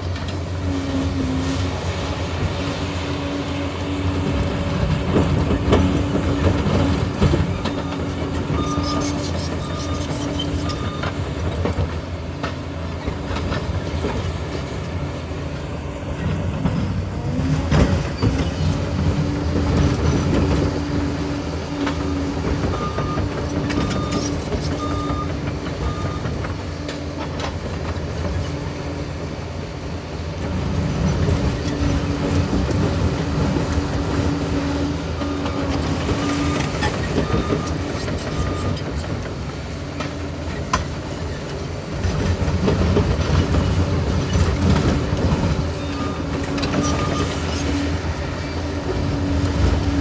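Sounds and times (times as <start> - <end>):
diesel engine running: 0.0 - 50.0
reversing alarm beeps: 7.7 - 11.3, 22.7 - 26.3, 35.3 - 38.8, 45.8 - 47.6.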